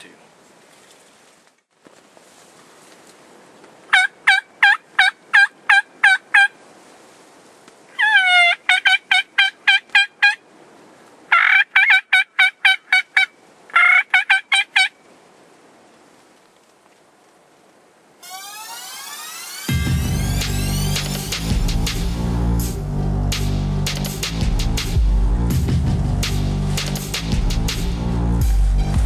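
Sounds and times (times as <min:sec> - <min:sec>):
turkey call yelps: 0:03.9 - 0:06.5, 0:07.9 - 0:10.4, 0:11.3 - 0:15.0.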